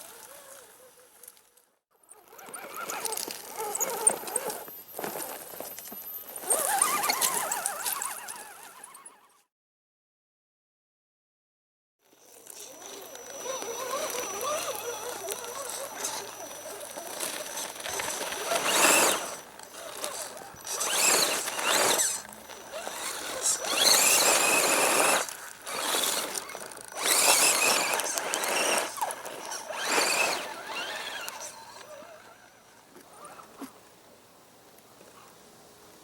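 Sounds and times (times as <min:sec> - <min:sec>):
electric motor whining: 0:12.2 - 0:33.5.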